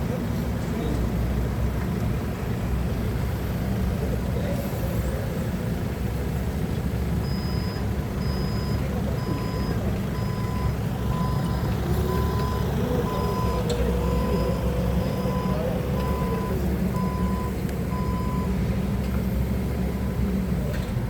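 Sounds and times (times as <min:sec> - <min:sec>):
forklift engine running: 0:00.0 - 0:21.0
reversing alarm beeping: 0:07.2 - 0:18.5.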